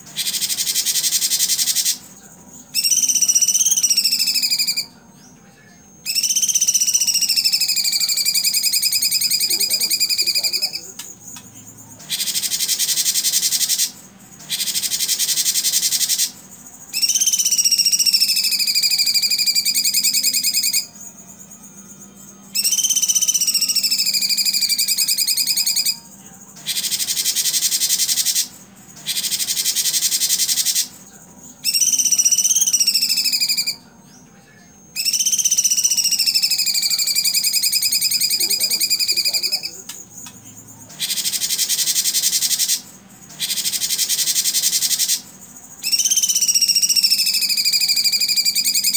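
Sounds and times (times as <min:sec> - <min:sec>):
bird rattling trills: 0:00.0 - 0:02.1, 0:02.7 - 0:04.9, 0:06.1 - 0:11.4, 0:12.0 - 0:21.2, 0:22.6 - 0:31.0, 0:31.6 - 0:33.8, 0:35.0 - 0:48.9
bird whistled phrases: 0:00.1 - 0:02.0, 0:02.7 - 0:05.4, 0:06.0 - 0:11.1, 0:12.0 - 0:20.9, 0:22.5 - 0:26.0, 0:31.6 - 0:34.2, 0:34.9 - 0:40.0, 0:40.9 - 0:45.2, 0:45.8 - 0:48.9.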